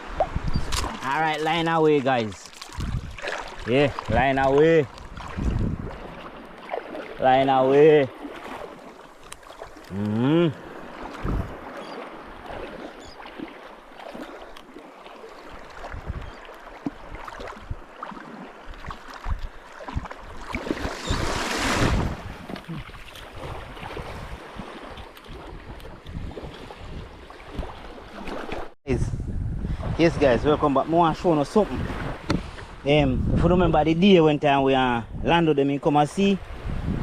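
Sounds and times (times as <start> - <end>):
wind and surf rushing: 0.0 - 37.0
man calling out: 7.2 - 8.1, 9.9 - 10.6.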